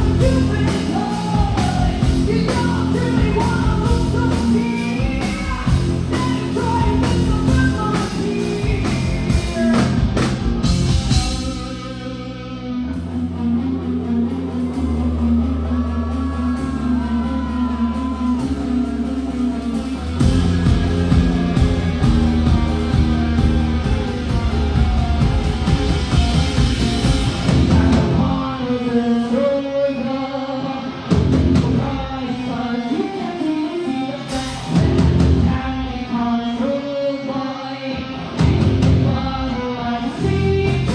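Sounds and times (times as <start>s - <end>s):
person singing: 0.0s - 10.1s, 31.7s - 40.9s
held bass notes: 0.0s - 28.8s, 34.6s - 35.7s, 40.2s - 40.9s
rock band playing: 0.0s - 40.9s.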